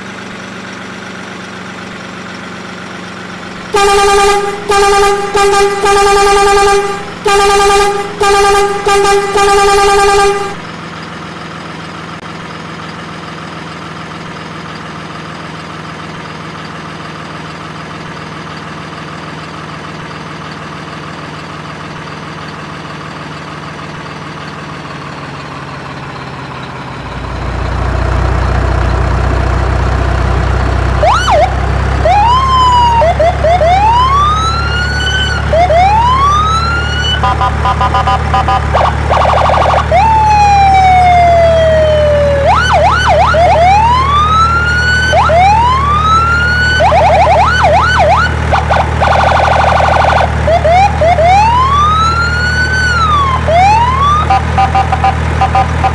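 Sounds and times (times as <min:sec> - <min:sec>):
electronic siren wailing and yelping: 0:03.8 - 0:10.6, 0:31.0 - 0:55.9.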